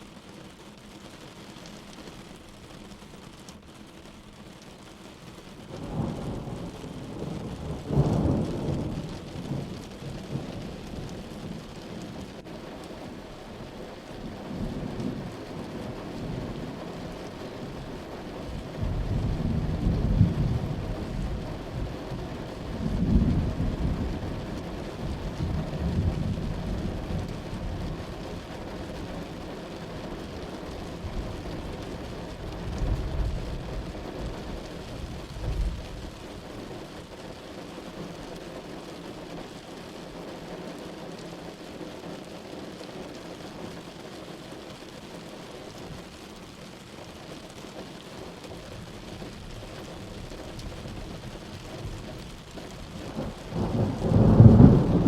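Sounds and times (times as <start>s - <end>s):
steady rain: 0.0s - 55.0s
rolling thunder: 5.7s - 11.8s, 18.6s - 28.2s, 51.8s - 55.0s.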